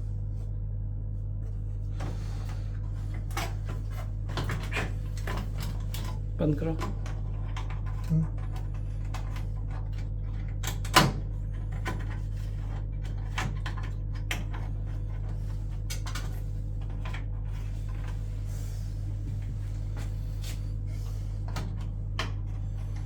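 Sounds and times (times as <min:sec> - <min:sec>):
steady low hum: 0:00.0 - 0:23.0
clicks and knocks of handling: 0:21.4 - 0:23.0.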